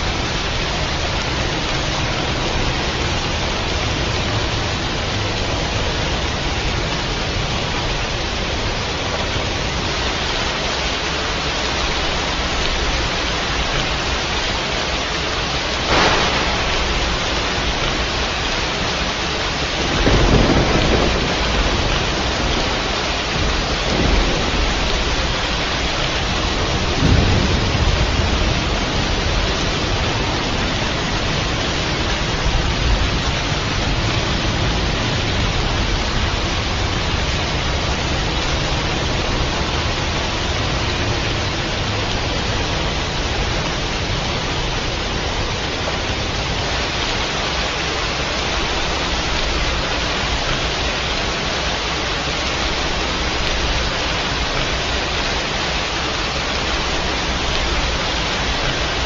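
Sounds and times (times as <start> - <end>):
steady rain: 0.0 - 59.0
thunder cracking and rumbling: 15.8 - 46.9.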